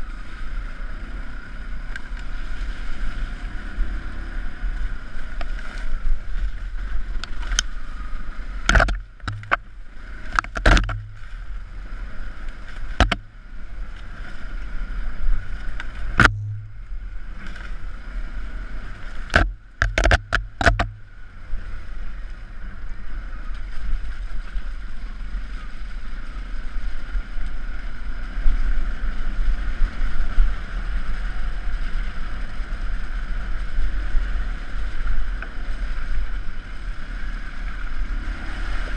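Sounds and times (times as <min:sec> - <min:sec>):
low wind rumble: 0:00.0 - 0:38.9
motorcycle engine running: 0:00.0 - 0:38.9
sharp knocks and clatters: 0:08.7 - 0:09.7, 0:10.4 - 0:11.3, 0:13.0 - 0:13.3, 0:16.2 - 0:16.8, 0:19.3 - 0:21.0.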